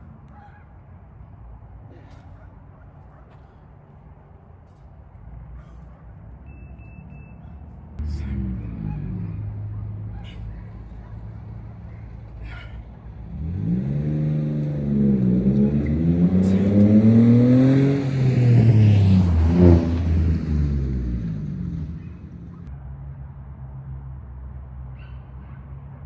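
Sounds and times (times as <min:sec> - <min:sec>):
vehicle engine accelerating past: 0:08.0 - 0:22.7.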